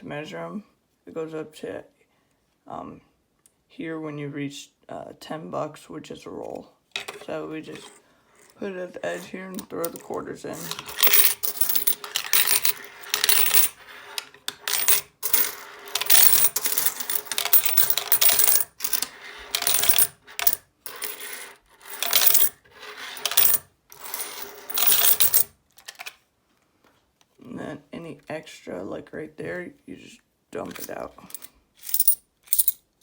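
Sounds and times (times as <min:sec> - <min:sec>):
coins clinking into a tube: 0:10.6 - 0:26.1, 0:30.7 - 0:32.8.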